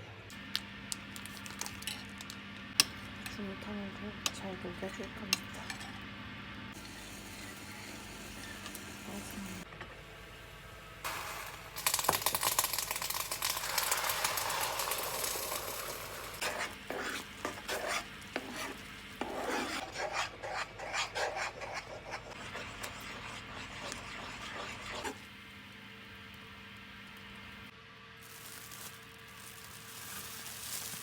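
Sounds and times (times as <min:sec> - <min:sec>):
spoon stirring and scraping a pot: 0:12.8 - 0:25.2.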